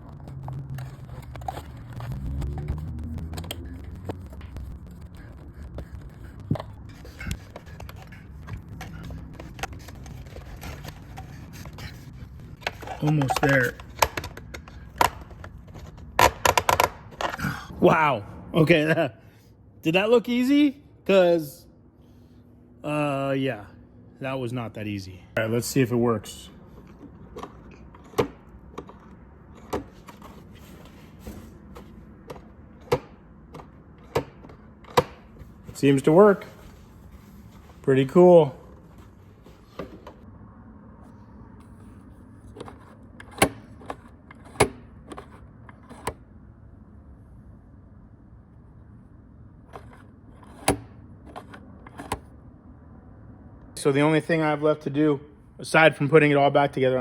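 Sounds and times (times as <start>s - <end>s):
low steady hum: 0.0s - 57.0s
metal parts and tools clicking: 6.0s - 17.5s.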